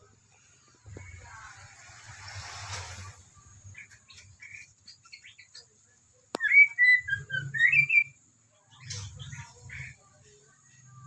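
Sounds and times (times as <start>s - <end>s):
chick whistled begging calls: 6.4s - 8.2s.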